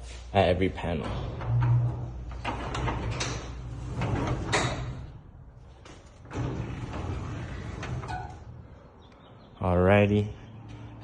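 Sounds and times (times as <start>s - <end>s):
garage door clicks and rattles: 0.8s - 8.7s.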